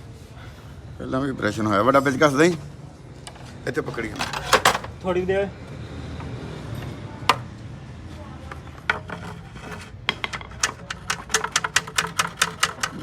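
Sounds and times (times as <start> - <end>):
metallic clicks of hand tools: 10.2 - 13.0.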